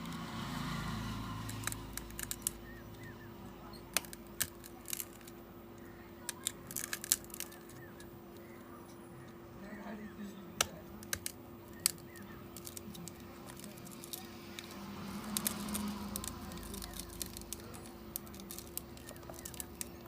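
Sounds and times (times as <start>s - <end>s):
steady low hum: 0.0s - 20.0s
small tools clicking and tapping: 1.4s - 3.1s, 3.9s - 5.4s, 6.2s - 8.1s, 10.6s - 20.0s.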